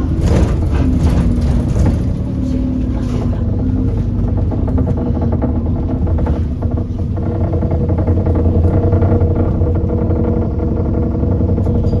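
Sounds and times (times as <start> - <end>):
bus engine rumble: 0.0 - 12.0.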